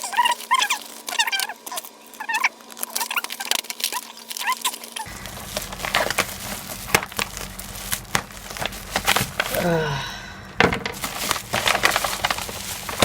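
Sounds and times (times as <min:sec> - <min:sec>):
packaging rustling and crackling: 0:00.0 - 0:10.0, 0:10.6 - 0:13.0
low steady hum: 0:05.1 - 0:13.0.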